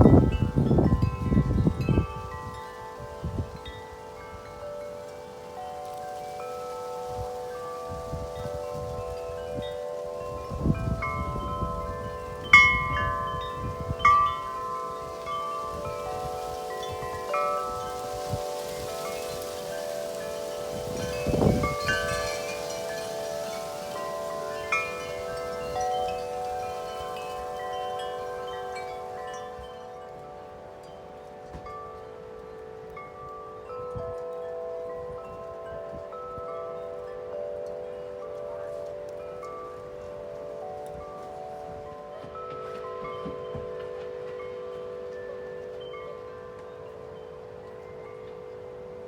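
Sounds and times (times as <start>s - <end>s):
wind buffeting microphone: 0.0s - 36.5s
wind chimes ringing: 0.0s - 49.0s.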